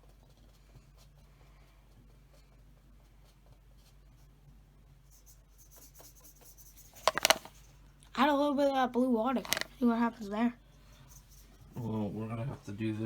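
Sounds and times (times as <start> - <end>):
wrapper being peeled: 7.0 - 7.5, 9.4 - 9.7.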